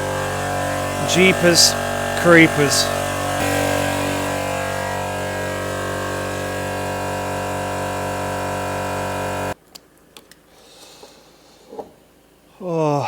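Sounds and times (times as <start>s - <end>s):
air compressor humming: 0.0s - 9.6s.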